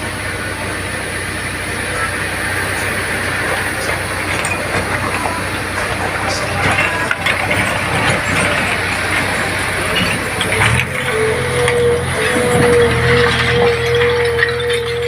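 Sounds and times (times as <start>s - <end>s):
diesel engine running: 0.0s - 15.0s
steady whine: 0.0s - 15.0s.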